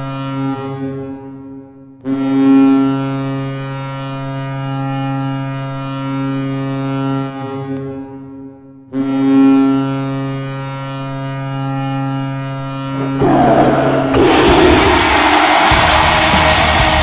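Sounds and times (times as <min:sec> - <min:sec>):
goal horn blast: 0:12.8 - 0:17.0.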